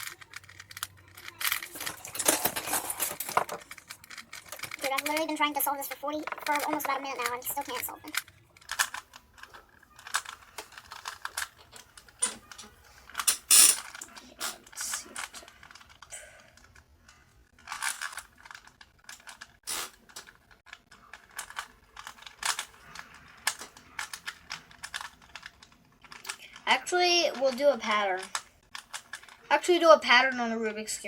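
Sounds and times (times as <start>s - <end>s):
plastic puzzle cube clicks: 17.7s - 26.4s.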